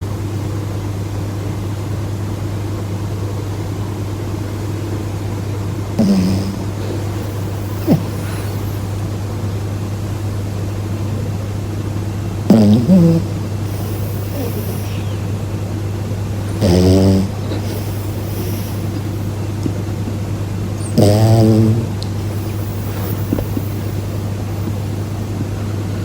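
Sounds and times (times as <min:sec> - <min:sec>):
steady low hum: 0:02.2 - 0:26.0
dog snoring: 0:04.9 - 0:09.6, 0:12.4 - 0:26.0.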